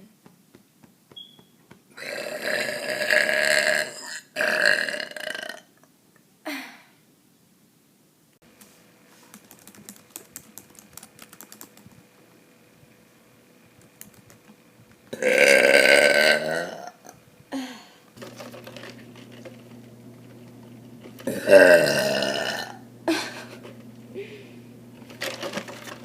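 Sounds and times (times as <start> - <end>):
woman burping: 2.0 - 5.8, 15.1 - 17.9, 21.2 - 23.6
faint rapid clicking: 9.3 - 12.0, 13.8 - 14.6
low hum: 17.0 - 26.0.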